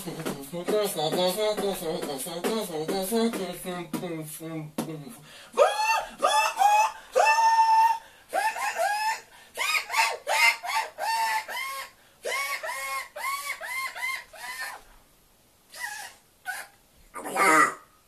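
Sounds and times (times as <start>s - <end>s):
high-pitched vocal notes: 0.0s - 5.2s, 17.2s - 17.9s.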